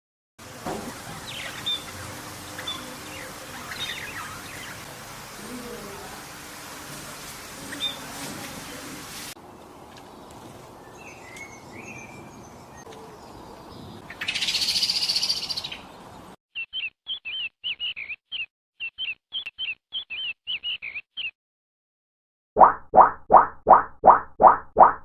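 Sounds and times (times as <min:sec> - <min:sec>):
loud buzzy bird trill: 0:01.2 - 0:05.6, 0:16.6 - 0:21.4
short repeated bird chirps: 0:16.5 - 0:21.4
faint bird chirps: 0:16.6 - 0:21.4.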